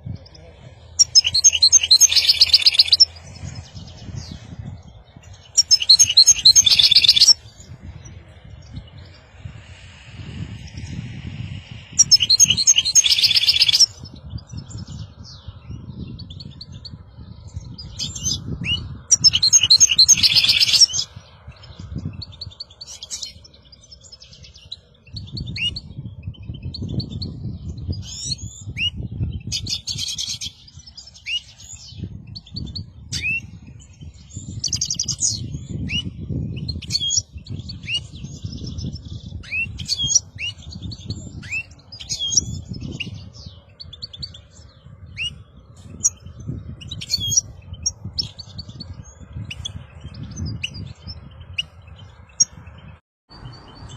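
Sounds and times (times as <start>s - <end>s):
bird twittering trills: 0.0s - 53.9s
low rumble: 7.4s - 12.8s.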